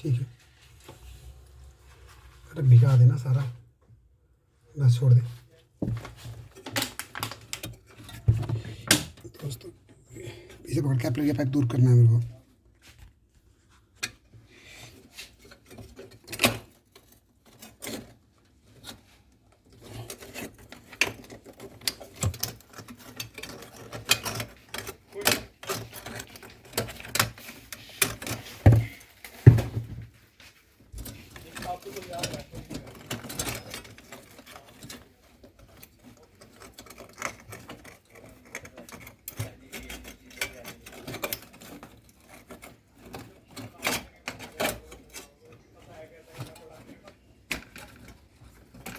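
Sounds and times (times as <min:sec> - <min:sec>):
tools clicking and scraping on pipework: 0:05.4 - 0:13.1, 0:13.7 - 0:48.9.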